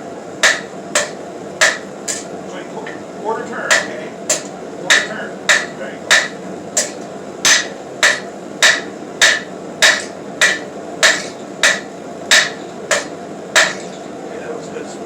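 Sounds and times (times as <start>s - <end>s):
hammer blows on hot steel: 3.7s - 14.0s.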